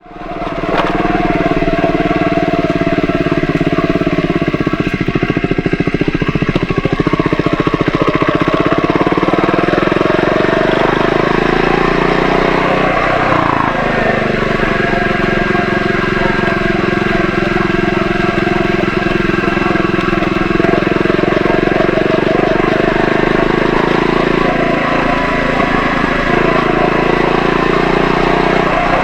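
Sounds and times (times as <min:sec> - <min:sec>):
motorcycle engine idling: 0:00.0 - 0:29.0.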